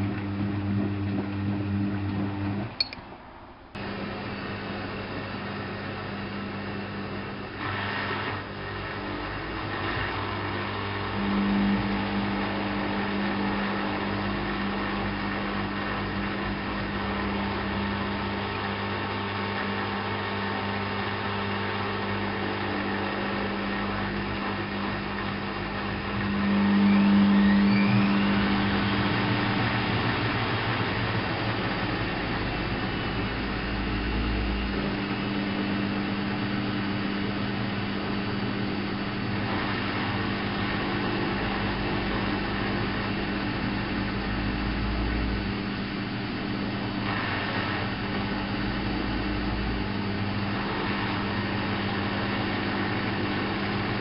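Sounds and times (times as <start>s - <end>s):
washing machine motor hum: 0.0s - 54.0s
faint rising whine: 25.3s - 52.7s.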